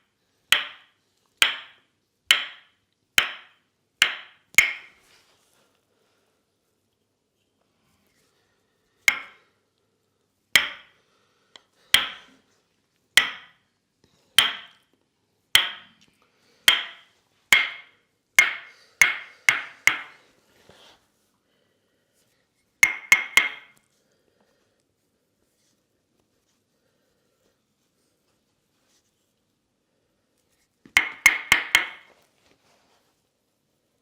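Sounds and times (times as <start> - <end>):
wooden mallet knocking wooden wedge: 0.5 - 5.0, 9.1 - 9.4, 10.6 - 10.9, 11.9 - 12.3, 13.2 - 13.6, 14.4 - 14.8, 15.6 - 16.0, 16.7 - 20.2, 22.8 - 23.8, 30.9 - 32.1.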